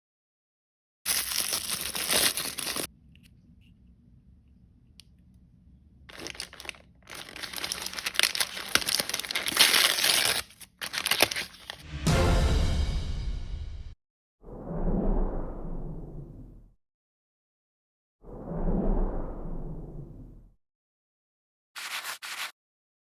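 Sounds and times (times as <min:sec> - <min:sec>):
plastic packaging crinkling and tearing: 0:01.1 - 0:02.9, 0:06.1 - 0:11.8, 0:21.8 - 0:22.5
music: 0:11.8 - 0:14.0.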